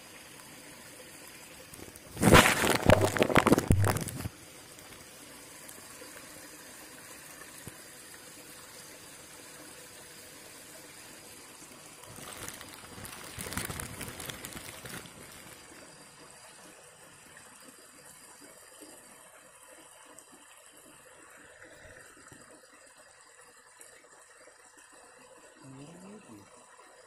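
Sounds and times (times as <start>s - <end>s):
stream water trickling: 0.0s - 27.0s
crackly noise: 1.6s - 6.5s, 10.8s - 16.7s.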